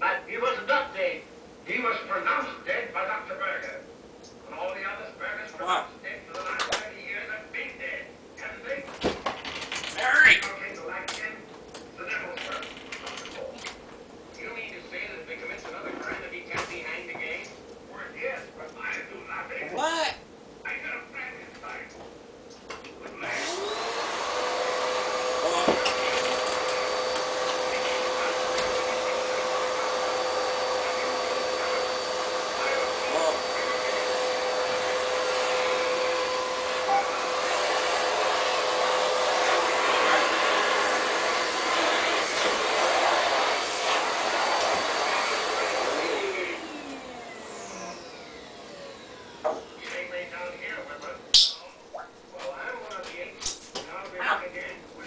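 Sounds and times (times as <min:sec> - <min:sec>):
vacuum cleaner motor whine: 0:23.1 - 0:50.4.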